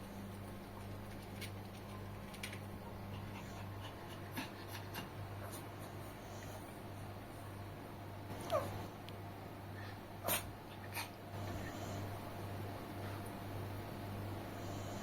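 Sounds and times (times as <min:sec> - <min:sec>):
steady low hum: 0:00.0 - 0:15.0
dog snoring softly: 0:11.4 - 0:12.3, 0:14.4 - 0:15.0.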